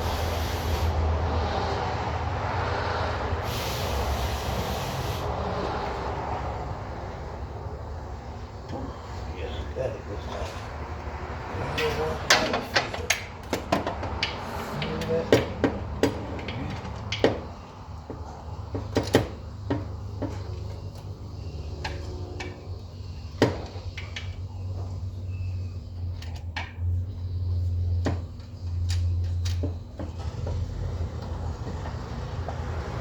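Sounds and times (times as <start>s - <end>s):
hand tools clinking on metal: 11.7s - 13.3s.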